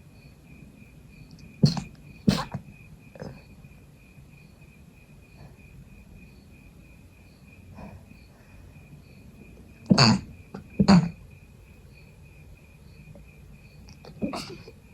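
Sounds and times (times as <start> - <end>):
person sniffing: 1.6 - 2.6.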